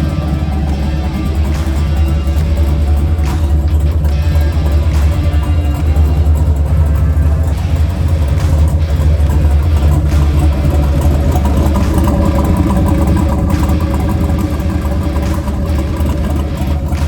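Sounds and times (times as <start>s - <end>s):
truck engine running steadily: 0.0s - 17.0s.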